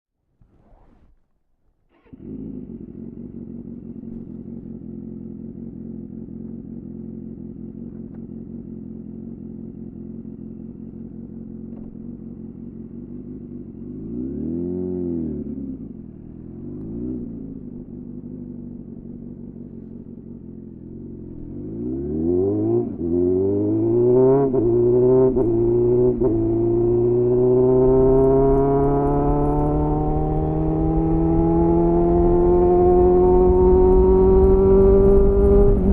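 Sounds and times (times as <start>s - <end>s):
motorcycle revving pulling away: 1.9s - 35.9s
motorcycle engine idling: 2.0s - 14.2s, 15.5s - 21.8s
motorcycle throttle blip: 7.8s - 8.5s.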